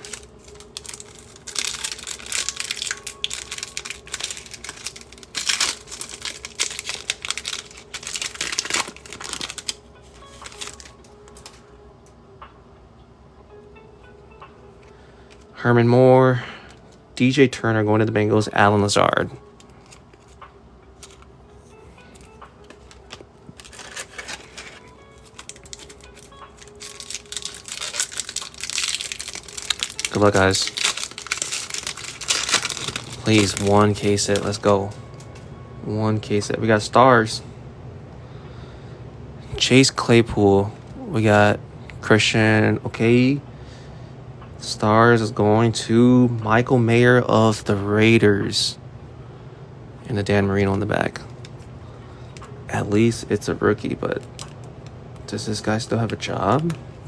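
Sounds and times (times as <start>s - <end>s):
foil pack tearing open: 0.0s - 9.8s, 10.4s - 11.5s, 23.0s - 34.6s
cards rustling: 0.0s - 11.6s, 19.4s - 35.4s.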